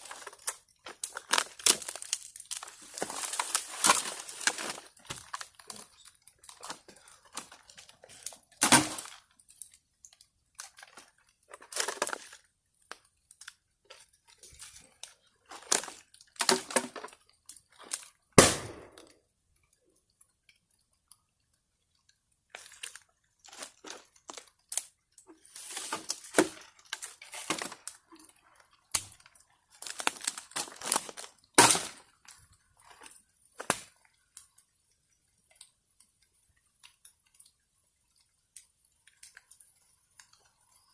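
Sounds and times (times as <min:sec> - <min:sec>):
bonfire crackling and popping: 0:00.0 - 0:40.9.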